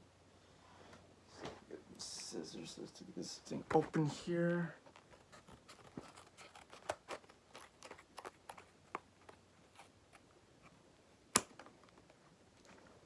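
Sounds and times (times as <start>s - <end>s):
scissors cutting plastic packaging: 5.7s - 8.7s
plastic snapping: 11.3s - 11.7s.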